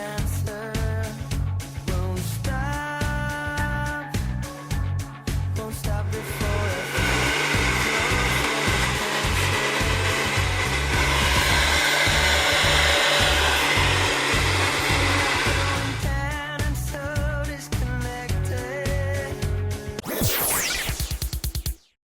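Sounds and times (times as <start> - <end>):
background music with a beat: 0.0 - 22.0
hair dryer running: 6.2 - 16.2.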